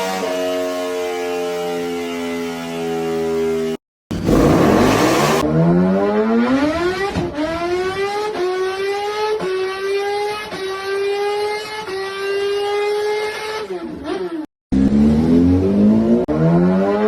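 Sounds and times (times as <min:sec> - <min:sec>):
motorcycle engine accelerating: 0:04.1 - 0:05.9.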